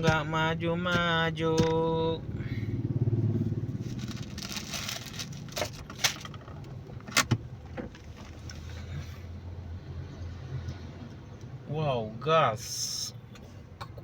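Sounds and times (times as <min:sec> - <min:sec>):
car interior low hum: 0:00.0 - 0:09.3.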